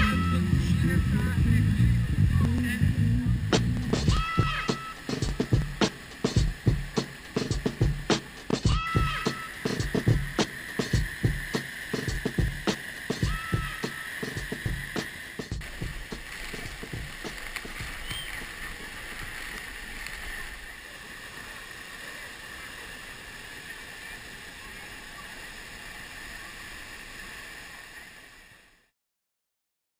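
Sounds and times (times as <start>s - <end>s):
waterfall rushing: 0.0s - 2.7s, 3.3s - 28.6s
low thumps: 0.0s - 4.6s, 5.2s - 9.2s, 14.4s - 18.0s.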